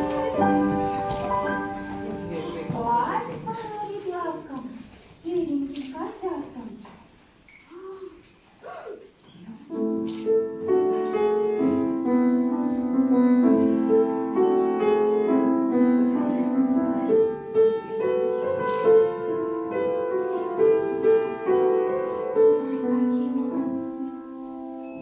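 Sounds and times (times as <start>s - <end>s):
gentle piano tune: 0.0s - 3.5s, 9.7s - 25.0s.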